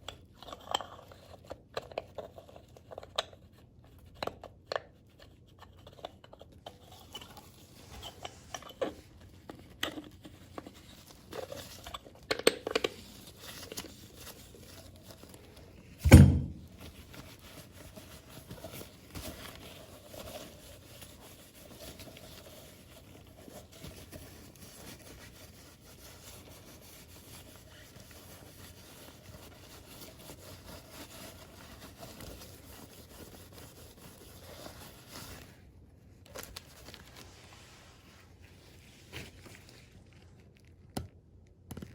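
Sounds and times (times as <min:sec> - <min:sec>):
loud knock: 0:16.0 - 0:16.6.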